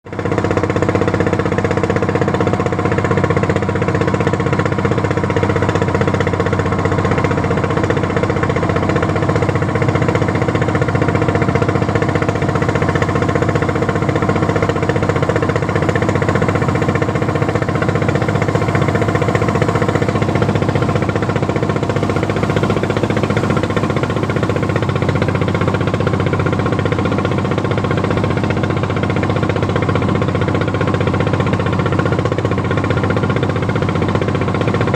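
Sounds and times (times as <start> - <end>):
boat engine running: 0.1 - 34.9.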